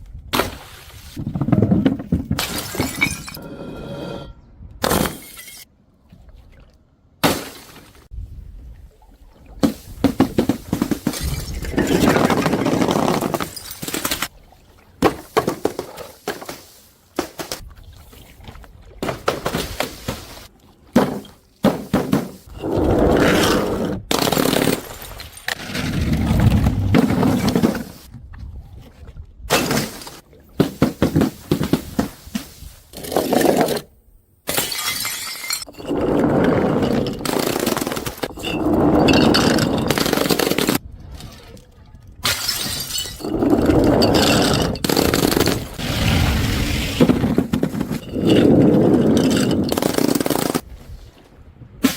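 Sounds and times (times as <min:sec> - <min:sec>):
glass bottles smashing: 0:02.4 - 0:03.5, 0:13.4 - 0:14.2, 0:34.5 - 0:40.8, 0:42.2 - 0:45.6.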